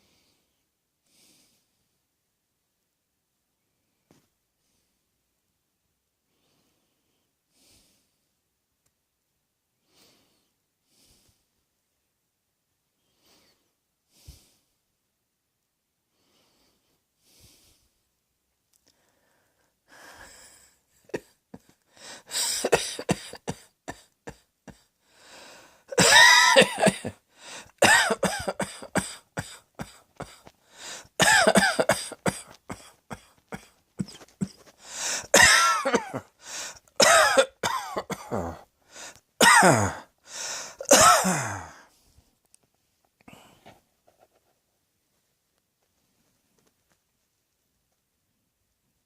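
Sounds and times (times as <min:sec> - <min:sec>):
person coughing: 0:22.3 - 0:24.9, 0:25.9 - 0:27.2, 0:27.8 - 0:30.5, 0:31.2 - 0:38.6, 0:39.4 - 0:40.1, 0:40.7 - 0:41.8.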